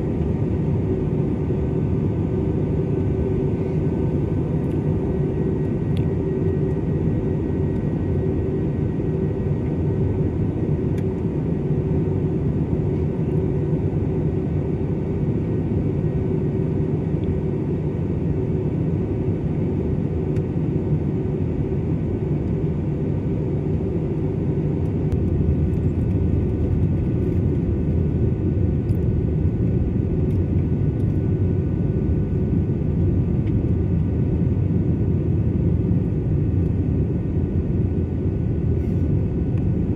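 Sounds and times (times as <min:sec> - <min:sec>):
faint steady whine: 0:00.0 - 0:39.9
jet engines rumbling: 0:00.0 - 0:39.9.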